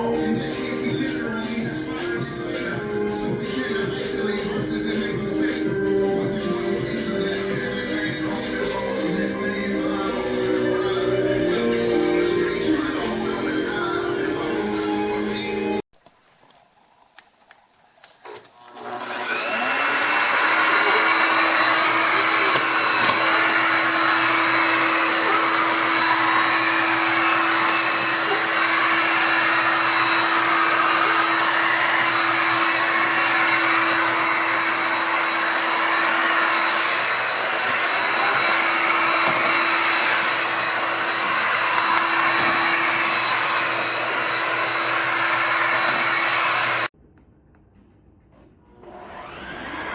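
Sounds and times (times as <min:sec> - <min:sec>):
vacuum mop motor whining: 0:18.2 - 0:46.9, 0:48.9 - 0:49.9.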